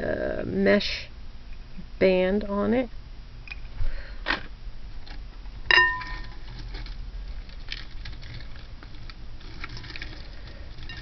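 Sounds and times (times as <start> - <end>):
sharp ringing clink: 5.7 - 6.3.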